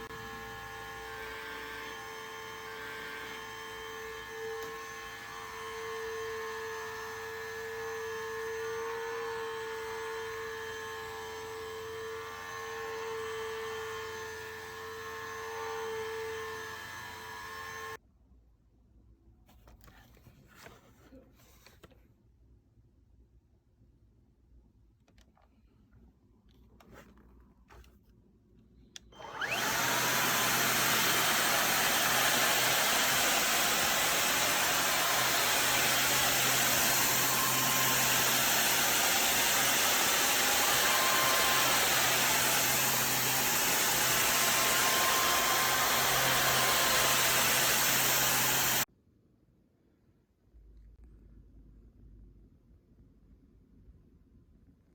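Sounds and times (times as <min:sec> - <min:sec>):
vacuum cleaner motor rushing air: 0:00.0 - 0:18.0, 0:29.2 - 0:48.9.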